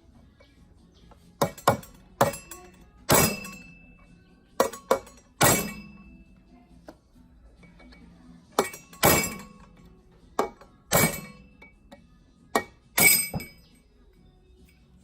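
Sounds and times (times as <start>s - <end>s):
metal-on-metal clanks: 1.4s - 6.2s, 7.6s - 11.8s, 12.6s - 13.7s.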